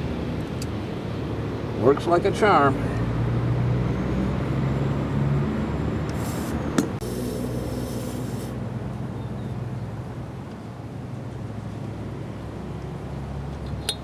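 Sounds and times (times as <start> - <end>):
air compressor humming: 6.1 - 8.6
air hissing: 6.1 - 8.6.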